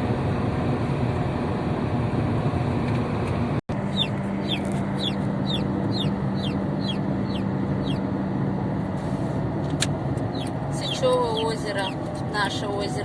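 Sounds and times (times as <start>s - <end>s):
car road noise: 0.0s - 13.0s
chicks peeping: 3.8s - 8.0s, 10.3s - 12.0s.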